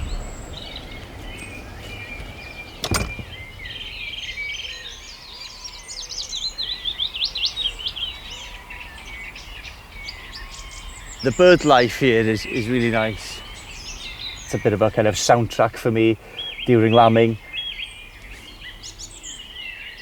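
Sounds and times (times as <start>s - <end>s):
songbirds chirping: 0.0s - 20.0s
sharp click: 2.8s - 3.4s.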